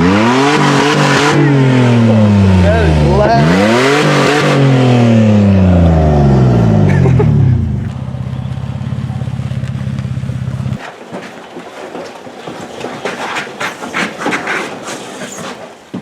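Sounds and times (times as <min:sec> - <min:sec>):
lawn mower engine idling: 0:01.4 - 0:03.8, 0:05.2 - 0:11.6.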